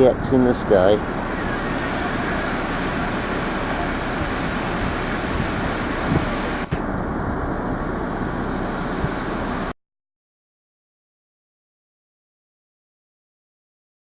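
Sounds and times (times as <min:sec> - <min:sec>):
road traffic hum: 0:00.0 - 0:09.8.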